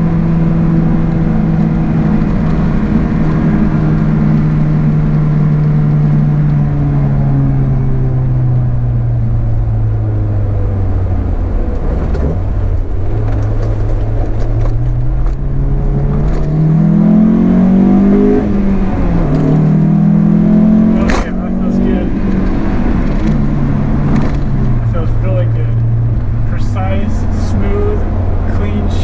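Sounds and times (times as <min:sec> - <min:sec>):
car engine revving while driving: 0:00.0 - 0:29.0.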